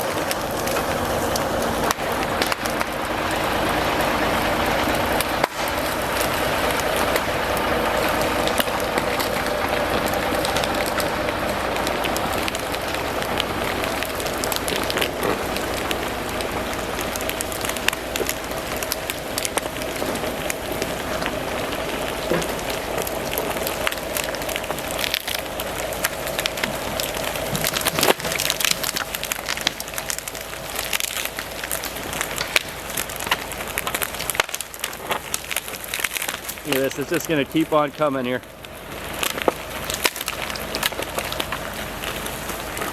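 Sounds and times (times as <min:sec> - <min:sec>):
log dragged through brush: 0:00.0 - 0:42.9
truck engine and winch whining: 0:00.0 - 0:42.9.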